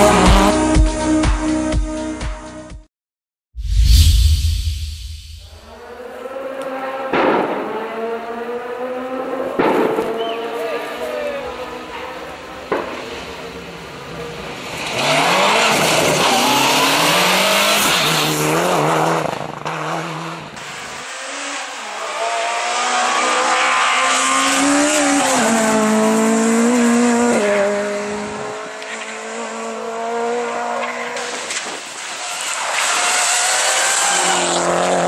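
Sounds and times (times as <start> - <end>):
rally car engines revving: 0.0 - 1.2, 5.6 - 35.0.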